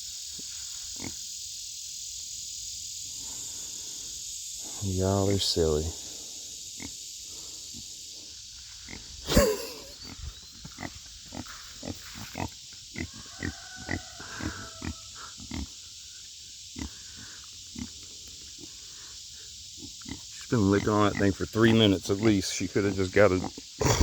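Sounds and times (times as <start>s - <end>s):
pig grunting: 8.9s - 15.7s, 23.3s - 24.0s.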